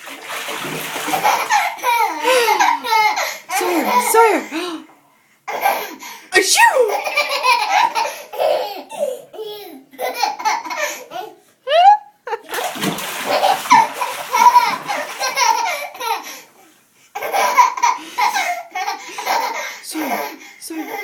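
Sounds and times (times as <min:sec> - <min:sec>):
water splashing: 0:00.0 - 0:02.8, 0:12.4 - 0:15.8
baby belly-laughing: 0:01.1 - 0:04.6, 0:05.5 - 0:11.4, 0:13.3 - 0:16.3, 0:17.2 - 0:21.0.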